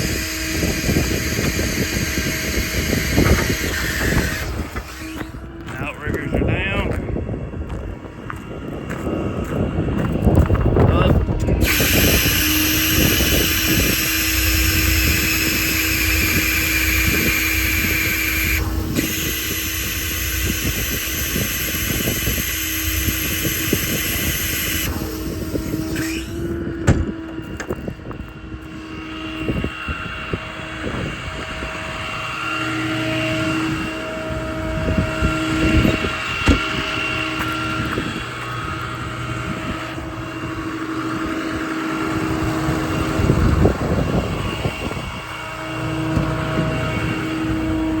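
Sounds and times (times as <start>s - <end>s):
truck machinery whining: 0.0s - 48.0s
loud hiss: 11.6s - 26.4s.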